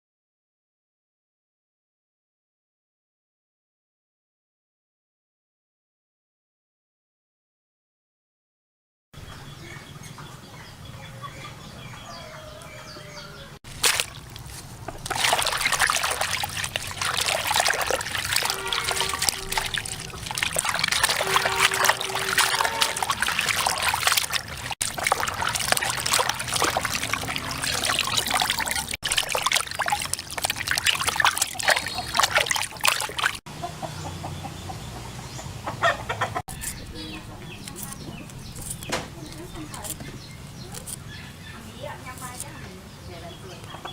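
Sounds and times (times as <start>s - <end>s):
water trickling and splashing: 13.6s - 41.0s, 41.8s - 42.6s
chickens clucking: 14.4s - 29.0s, 31.0s - 43.9s.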